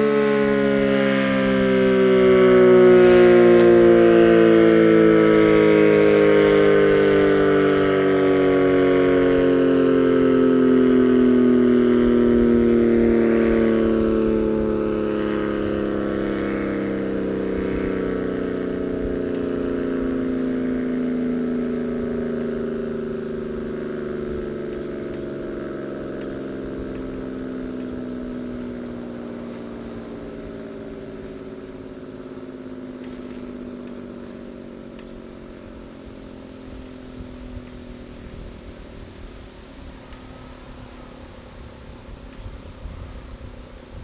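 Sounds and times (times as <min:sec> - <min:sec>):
warning siren winding down: 0:00.0 - 0:44.0.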